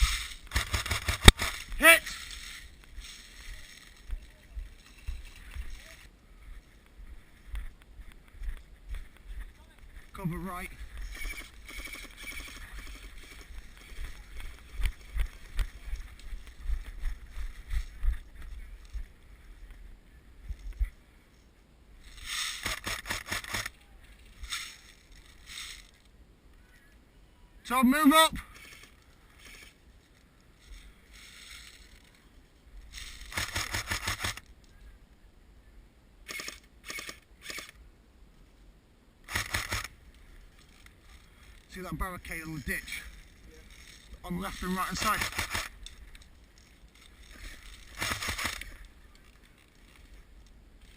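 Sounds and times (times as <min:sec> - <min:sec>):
airsoft gun full-auto bursts: 0:00.0 - 0:01.7, 0:11.1 - 0:13.4, 0:22.3 - 0:23.7, 0:33.2 - 0:34.4, 0:36.3 - 0:37.8, 0:39.3 - 0:40.0, 0:44.9 - 0:45.8, 0:47.8 - 0:48.8
footsteps running on rough ground: 0:10.7 - 0:19.2.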